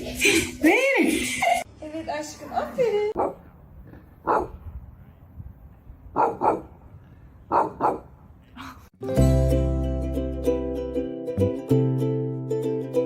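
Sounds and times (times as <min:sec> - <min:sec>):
dog barking: 0:03.2 - 0:03.5, 0:04.2 - 0:04.6, 0:06.1 - 0:06.8, 0:07.5 - 0:08.1
plucked-string music: 0:09.0 - 0:13.0.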